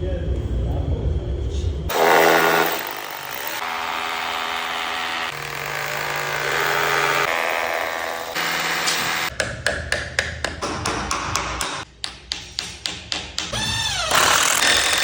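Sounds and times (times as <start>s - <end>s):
power tool motor running: 1.9s - 9.3s, 14.1s - 15.0s.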